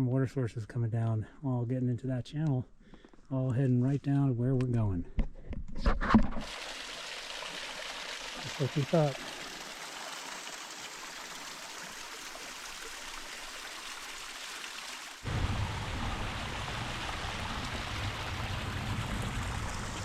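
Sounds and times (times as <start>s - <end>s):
stream rushing over rocks: 6.5s - 20.0s.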